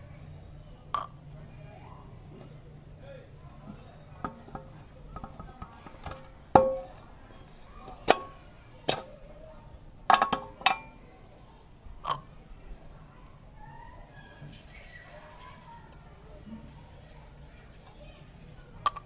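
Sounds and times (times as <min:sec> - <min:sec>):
metal tools clinking and knocking: 0:04.2 - 0:09.2, 0:10.1 - 0:11.0.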